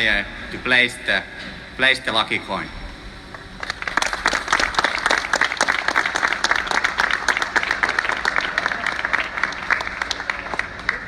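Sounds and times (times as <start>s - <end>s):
crowd applauding: 3.3s - 11.0s.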